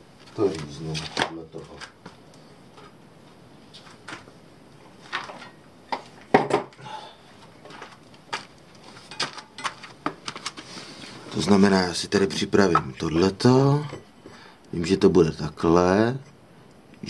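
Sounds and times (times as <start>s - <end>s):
tools knocking on workbench: 6.3s - 6.8s.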